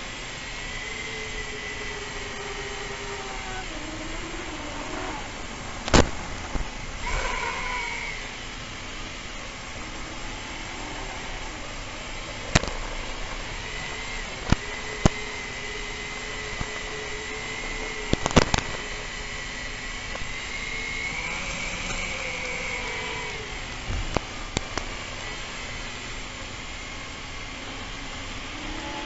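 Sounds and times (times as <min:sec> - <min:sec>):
drone motors whining: 0:00.0 - 0:29.0
sharp clicks: 0:12.4 - 0:17.0, 0:17.6 - 0:19.1.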